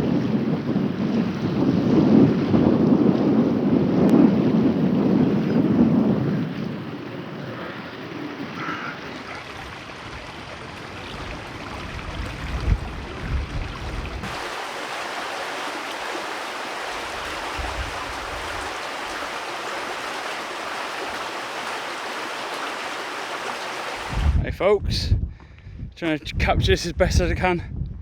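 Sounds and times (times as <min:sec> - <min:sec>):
wind and water rushing: 0:00.0 - 0:25.1
wind gusts buffeting microphone: 0:00.0 - 0:28.0.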